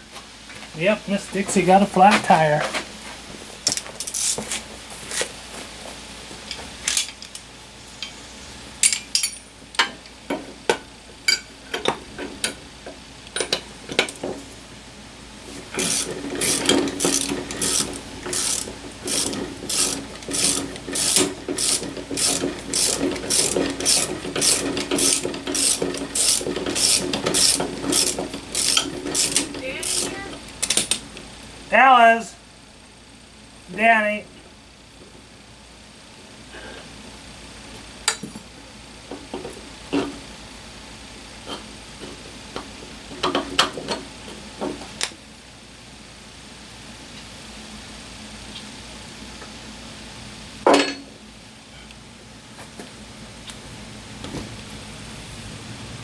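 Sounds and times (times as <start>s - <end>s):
steady hum: 0.0s - 56.0s
mechanism clicking and ratcheting: 15.7s - 31.0s.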